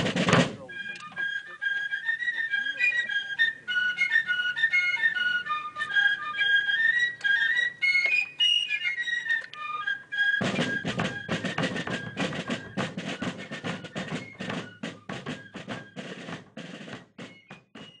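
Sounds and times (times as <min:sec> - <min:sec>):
snare drum rolls: 0:00.0 - 0:01.0, 0:10.2 - 0:18.0.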